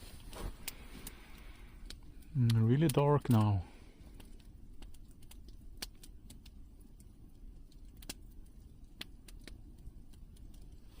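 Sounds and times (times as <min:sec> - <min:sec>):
campfire crackling and popping: 0:00.0 - 0:11.0
low steady rumble: 0:00.0 - 0:11.0.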